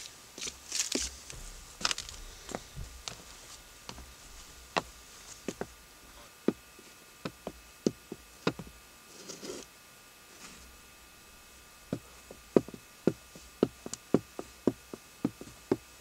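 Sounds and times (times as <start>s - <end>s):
short rustle: 10.3s - 10.8s.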